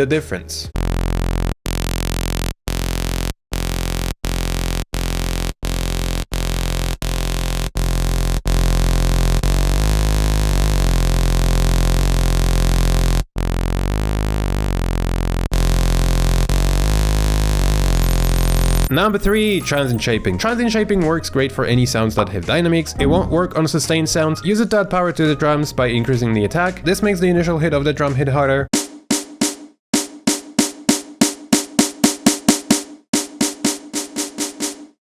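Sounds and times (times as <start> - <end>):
processed synthesizer notes: 0.0 - 21.0.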